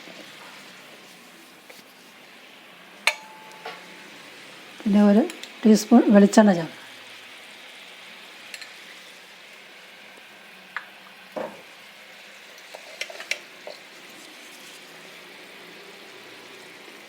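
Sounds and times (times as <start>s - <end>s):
water heating in a pan hissing: 0.0s - 17.0s
light utensil clinks: 3.1s - 3.8s.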